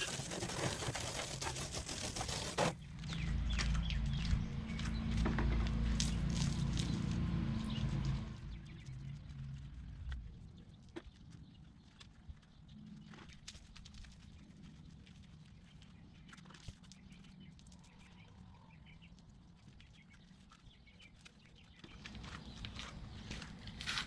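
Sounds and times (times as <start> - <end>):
low steady rumble: 2.8 - 10.8.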